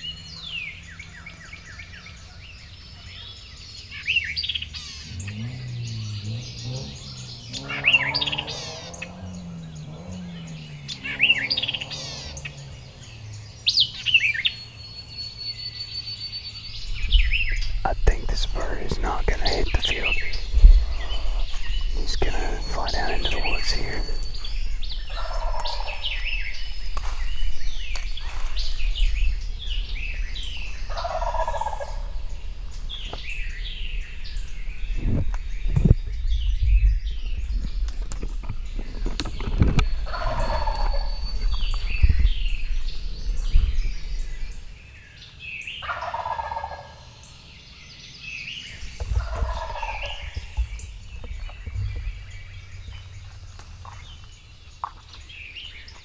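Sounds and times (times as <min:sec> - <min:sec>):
songbirds chirping: 0:00.0 - 0:56.0
turkey gobbling: 0:23.6 - 0:27.2, 0:30.6 - 0:33.2, 0:40.0 - 0:41.2, 0:45.8 - 0:47.1, 0:49.0 - 0:50.7.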